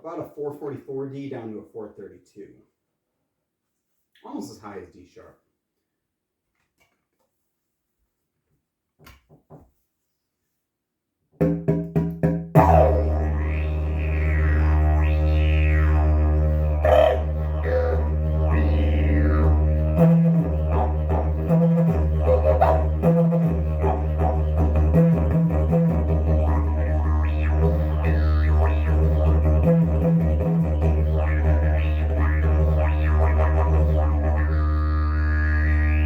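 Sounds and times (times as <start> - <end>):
didgeridoo drone: 12.6 - 36.0.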